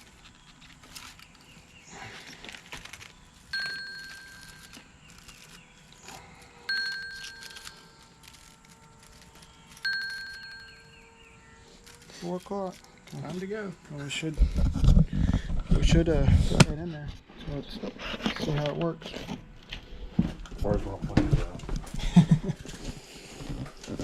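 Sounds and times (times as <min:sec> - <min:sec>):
faint steady hum: 0:00.0 - 0:24.0
bell-like ringtone: 0:03.5 - 0:05.0, 0:06.6 - 0:08.8, 0:09.7 - 0:11.2.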